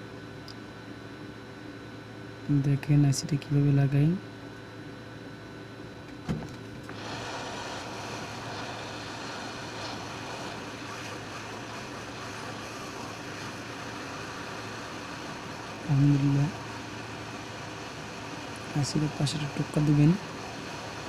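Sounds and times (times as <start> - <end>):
hot-air station blowing: 5.8 - 21.0.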